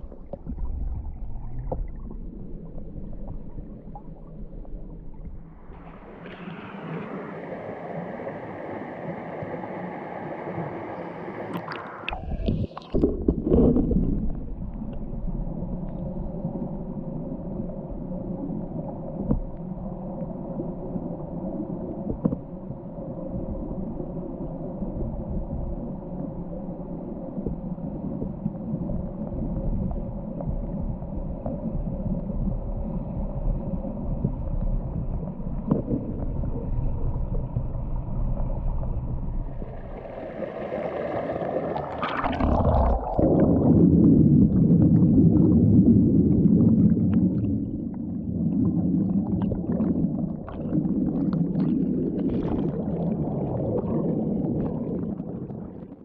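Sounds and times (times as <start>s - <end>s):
stream gurgling over rocks: 39.6s - 44.0s.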